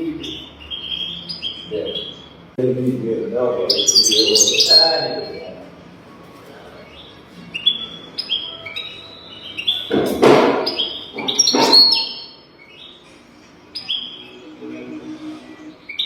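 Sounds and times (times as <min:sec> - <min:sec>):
goldfinch twittering: 0:03.7 - 0:05.5, 0:10.6 - 0:13.0.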